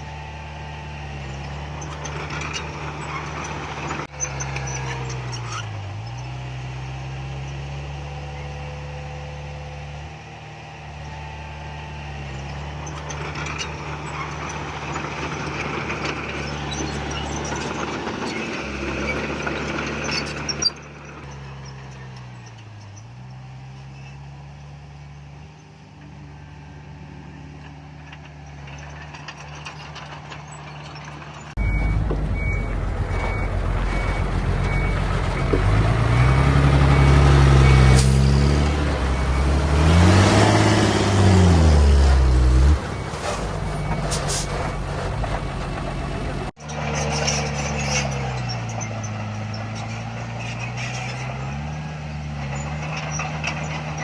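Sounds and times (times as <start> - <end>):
heavy machinery diesel engines: 0.0 - 54.0
reversing alarm beeping: 31.6 - 40.3, 42.6 - 44.9.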